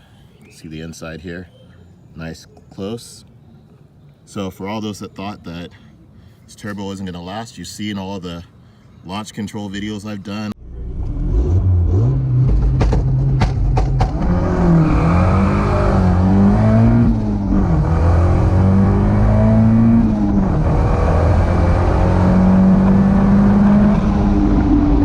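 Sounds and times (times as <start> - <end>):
car engine revving: 10.6 - 25.0
sharp exhaust pops: 12.2 - 14.5.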